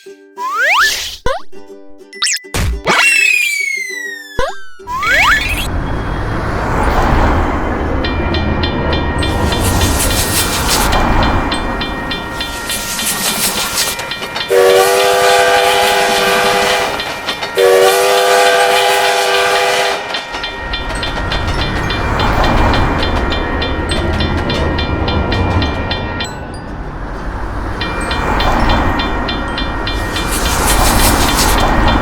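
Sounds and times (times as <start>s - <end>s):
passing train rumbling: 4.9s - 32.0s
train horn blasts: 14.5s - 20.3s
fast high ticking: 27.8s - 32.0s.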